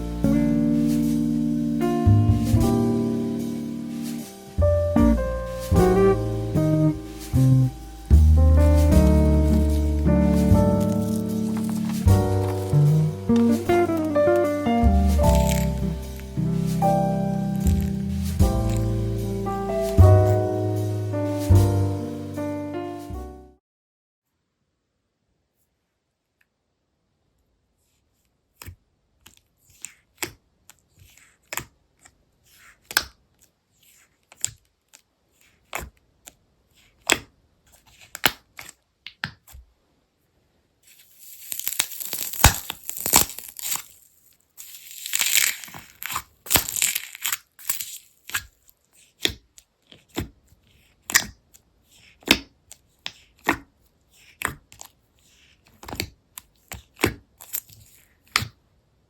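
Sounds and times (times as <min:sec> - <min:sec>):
slime crackling: 0:05.1 - 0:20.7, 0:40.9 - 0:49.4
slime popping: 0:41.2 - 0:44.0, 0:44.6 - 0:48.0.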